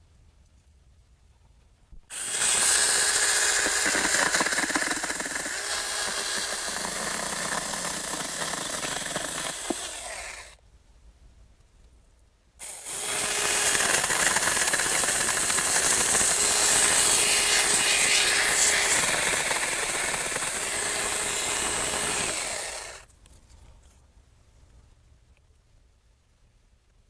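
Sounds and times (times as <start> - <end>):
electric chainsaw cutting limb: 2.1 - 10.6, 12.6 - 23.1.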